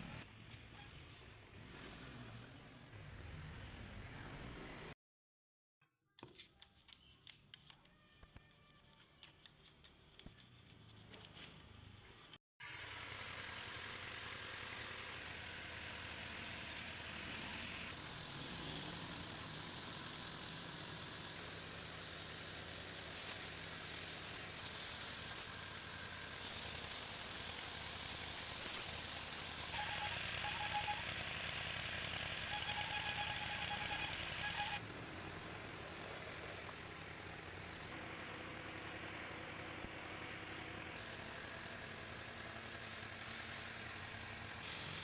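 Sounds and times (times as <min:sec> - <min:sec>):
pressure washer water jet hissing: 0:12.6 - 0:29.8, 0:34.8 - 0:37.9, 0:41.0 - 0:45.0.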